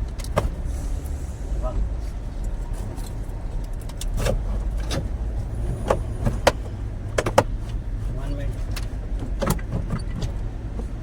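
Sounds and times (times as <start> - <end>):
steady low rumble: 0.0 - 9.4.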